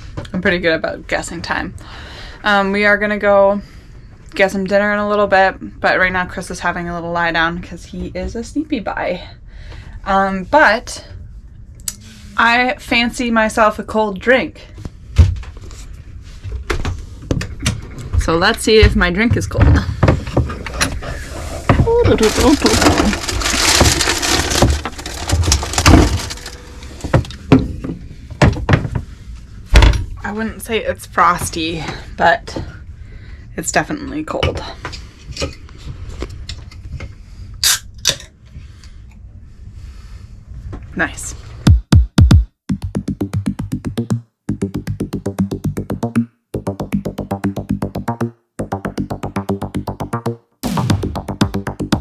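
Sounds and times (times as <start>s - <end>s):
items rustling and clattering: 19.9s - 27.7s
electronic music with drum machine: 41.7s - 52.0s.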